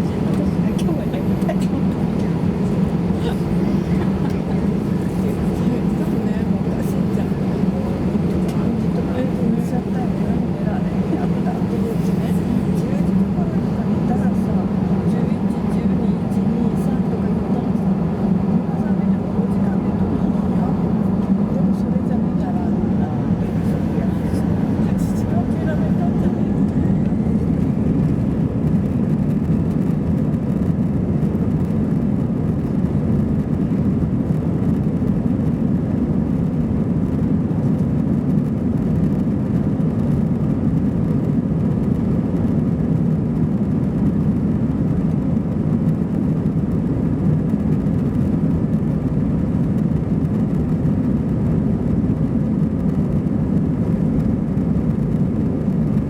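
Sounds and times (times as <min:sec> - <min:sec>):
jet engine cabin rumble: 0:00.0 - 0:56.0.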